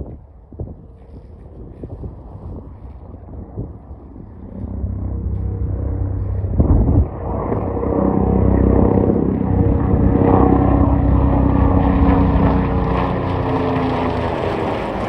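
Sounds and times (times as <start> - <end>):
helicopter rotor and turbine: 0.0 - 15.0
loud low buffet: 3.8 - 15.0.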